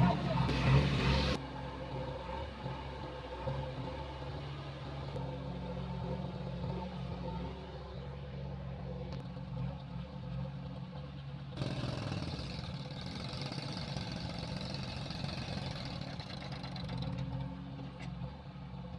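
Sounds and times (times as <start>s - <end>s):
heavy diesel engine running: 0.0s - 1.7s, 11.6s - 17.5s.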